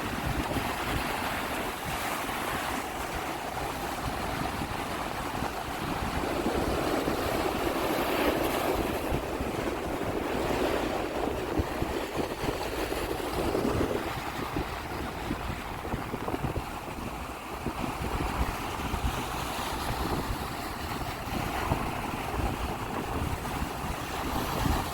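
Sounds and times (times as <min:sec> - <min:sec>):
sea waves washing ashore: 0:00.0 - 0:24.9
wind noise on microphone: 0:00.0 - 0:24.9.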